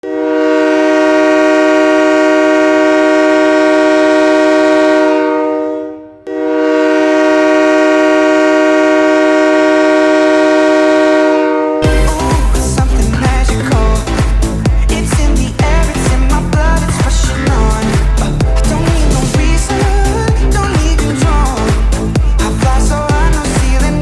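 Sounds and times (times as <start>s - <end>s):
air horn blasts: 0.0s - 12.9s
pop dance music: 11.8s - 24.0s.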